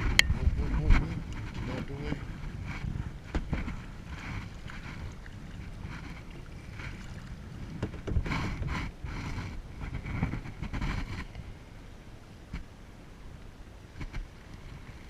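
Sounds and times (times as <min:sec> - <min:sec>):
wind buffeting microphone: 0:00.0 - 0:11.8
water sloshing against kayak: 0:00.0 - 0:15.0.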